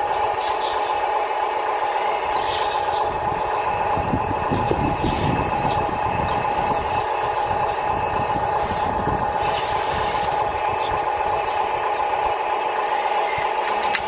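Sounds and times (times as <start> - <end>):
small electric motor whining: 0.0 - 14.0
low rumble: 2.0 - 13.7.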